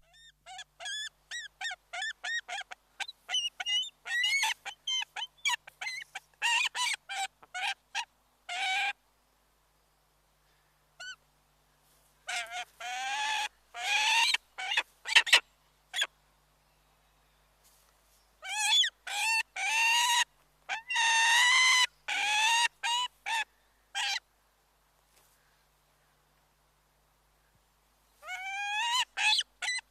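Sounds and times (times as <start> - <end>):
large bird calling: 28.2 - 29.9.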